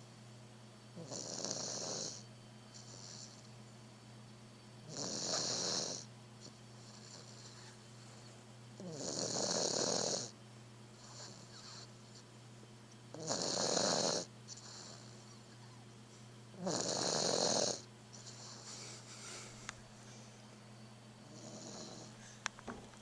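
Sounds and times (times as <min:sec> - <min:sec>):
pet snoring: 0:01.0 - 0:03.4, 0:04.8 - 0:06.1, 0:06.8 - 0:07.8, 0:08.8 - 0:10.4, 0:11.0 - 0:11.9, 0:13.1 - 0:15.8, 0:16.5 - 0:18.7, 0:21.2 - 0:22.4
quiet breaths: 0:01.1 - 0:03.8, 0:05.2 - 0:12.4, 0:13.1 - 0:22.6.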